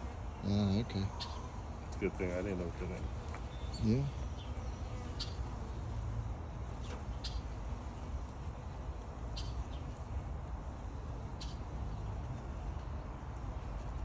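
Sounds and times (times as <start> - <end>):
birds chirping: 0.0 - 5.6, 6.8 - 7.6.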